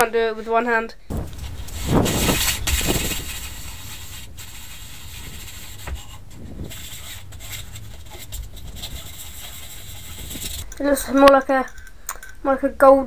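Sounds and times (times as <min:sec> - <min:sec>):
rag rubbing wood: 0:01.2 - 0:10.6.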